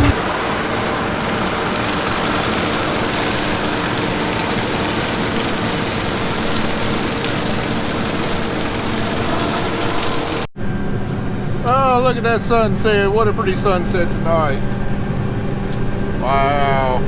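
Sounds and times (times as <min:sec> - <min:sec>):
cotton picker machine running: 0:00.0 - 0:10.5.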